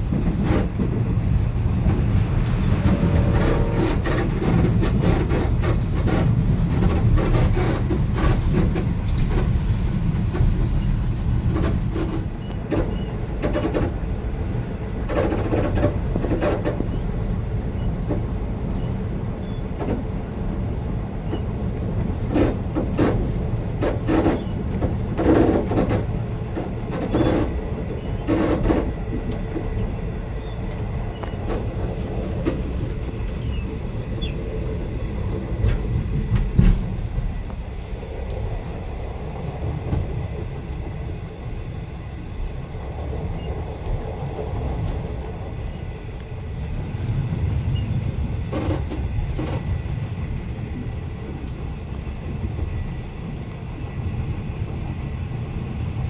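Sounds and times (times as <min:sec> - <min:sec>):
train carriage bump: 0:00.0 - 0:14.0, 0:15.0 - 0:17.0, 0:19.7 - 0:20.3, 0:21.3 - 0:29.8, 0:30.7 - 0:37.7, 0:47.8 - 0:50.2
train carriage rumble: 0:00.0 - 0:56.0
wheel clacks over rail joints: 0:21.3 - 0:29.8.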